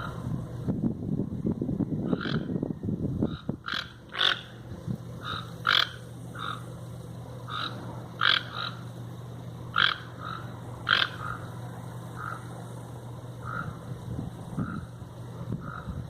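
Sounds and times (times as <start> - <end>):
steady low hum: 0.0 - 16.0
toucan croaking calls: 2.0 - 6.8, 7.4 - 9.0, 9.7 - 12.6, 13.4 - 13.9, 14.5 - 16.0.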